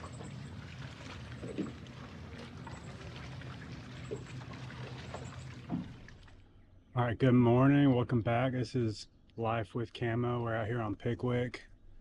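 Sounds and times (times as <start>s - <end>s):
water splashing and trickling: 0.0s - 6.4s
steady low hum: 0.0s - 12.0s.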